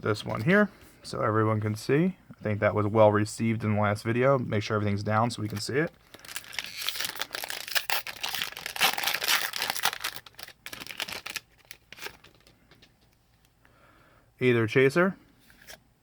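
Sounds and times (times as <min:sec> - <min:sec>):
foil wrapper crinkling: 0:05.4 - 0:12.8.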